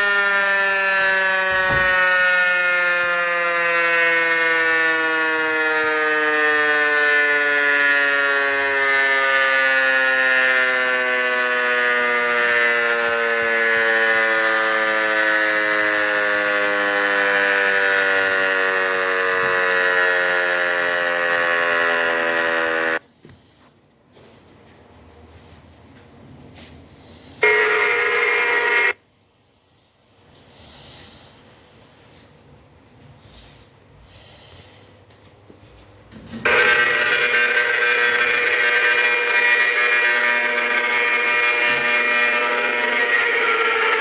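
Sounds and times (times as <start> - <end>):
tornado warning siren: 0.0 - 23.0, 27.1 - 29.0, 36.2 - 44.0.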